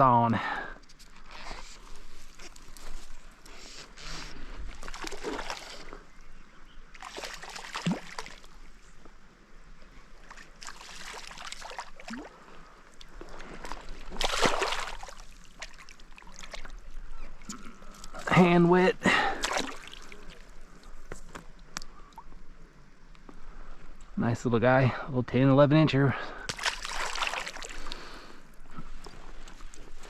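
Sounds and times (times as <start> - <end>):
water splashing from thrashing fish: 4.7 - 5.9, 7.0 - 8.5, 10.2 - 12.4, 13.6 - 16.8, 19.4 - 20.4, 26.5 - 27.9.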